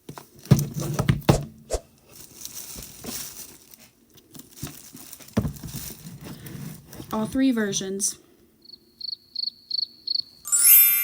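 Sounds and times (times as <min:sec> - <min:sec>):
albums knocking on surface: 0:00.4 - 0:01.5, 0:05.4 - 0:05.8
plastic packaging crinkling: 0:01.9 - 0:06.2.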